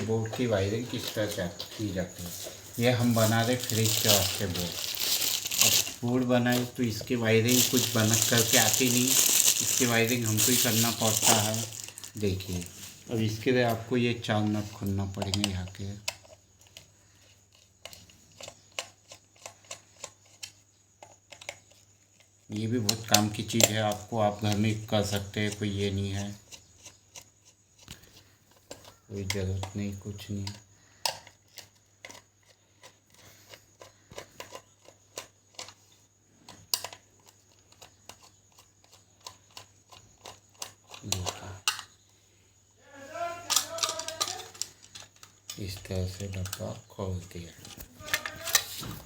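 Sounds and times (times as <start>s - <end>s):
small metal parts clicking: 0.9s - 12.9s, 36.5s - 42.0s, 43.3s - 46.8s
small clicks and taps of unscrewing: 17.5s - 22.3s.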